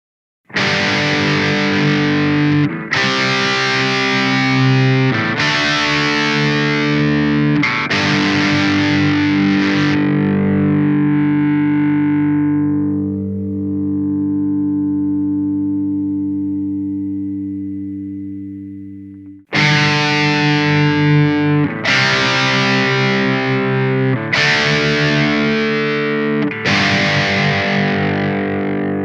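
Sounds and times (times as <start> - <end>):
distorted electric guitar chords: 0.5 - 29.0.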